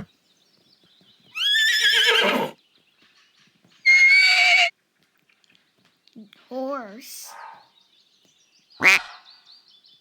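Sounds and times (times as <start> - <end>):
horse whinnying: 1.4 - 2.6, 3.9 - 4.7.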